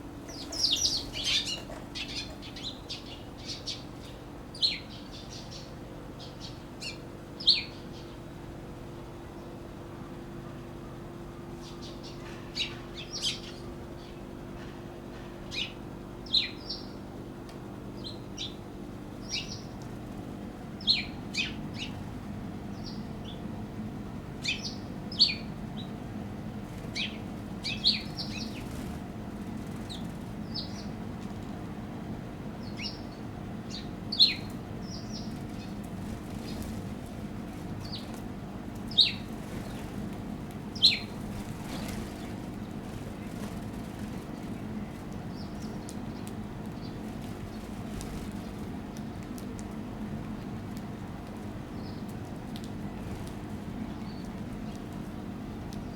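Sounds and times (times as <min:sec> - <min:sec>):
low background hum: 0:00.0 - 0:55.9
sparrows chirping: 0:00.1 - 0:08.4, 0:11.5 - 0:14.7, 0:15.4 - 0:17.1, 0:18.0 - 0:18.6, 0:19.2 - 0:19.8, 0:20.8 - 0:22.0, 0:22.6 - 0:23.5, 0:24.4 - 0:26.0, 0:26.8 - 0:31.1, 0:32.6 - 0:49.2, 0:51.6 - 0:52.2, 0:53.0 - 0:55.0, 0:55.7 - 0:55.9.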